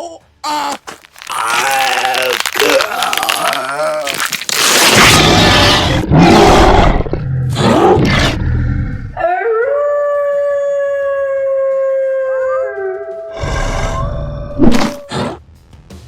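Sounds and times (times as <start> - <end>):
rough loud roaring: 4.9 - 9.2.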